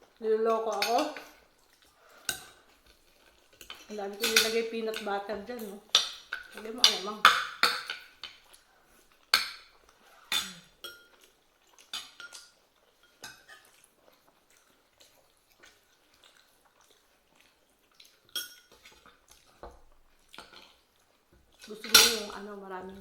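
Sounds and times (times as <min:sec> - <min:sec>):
cutlery clinking on plates: 0:03.6 - 0:05.1, 0:05.9 - 0:08.5, 0:09.3 - 0:11.3, 0:11.9 - 0:13.8, 0:18.3 - 0:19.8, 0:21.8 - 0:22.4.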